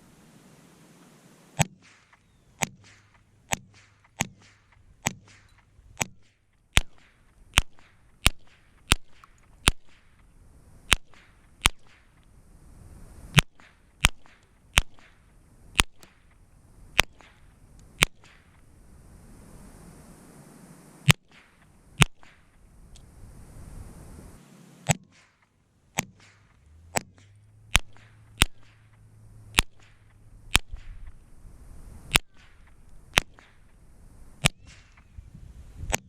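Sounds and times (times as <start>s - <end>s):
rifle shots cracking: 1.6s - 10.3s, 10.9s - 12.2s, 13.3s - 18.7s, 21.0s - 22.7s, 24.8s - 31.4s, 32.1s - 35.0s.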